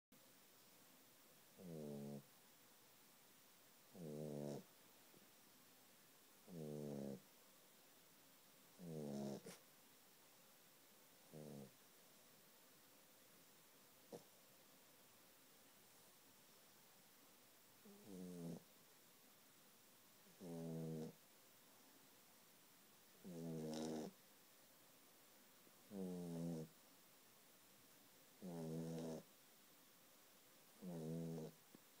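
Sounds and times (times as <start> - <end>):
puppy snoring: 1.5 - 2.4, 3.8 - 5.2, 6.4 - 7.3, 8.7 - 9.6, 11.2 - 11.9, 14.1 - 14.4, 17.8 - 18.7, 20.2 - 21.2, 23.1 - 24.2, 25.8 - 26.8, 28.4 - 29.3, 30.8 - 31.7.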